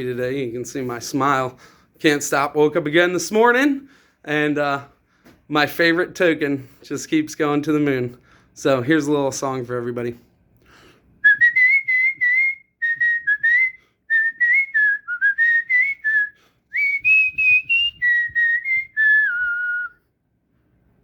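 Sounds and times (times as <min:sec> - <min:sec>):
man whistling a melody: 0:11.2 - 0:20.1.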